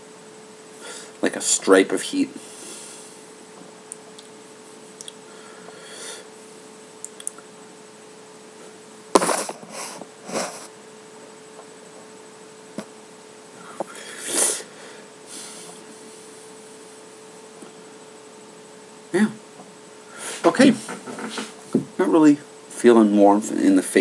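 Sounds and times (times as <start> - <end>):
faint steady hum: 0.0 - 24.0
person sniffing sharply: 9.2 - 10.7, 14.0 - 15.8, 20.2 - 20.5.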